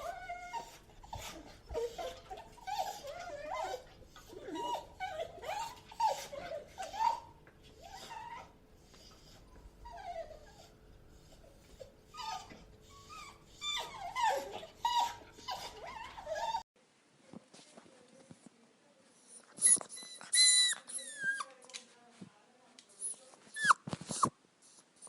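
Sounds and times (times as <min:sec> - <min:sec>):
dog whining: 0:00.0 - 0:16.6, 0:19.3 - 0:21.6, 0:23.0 - 0:24.3.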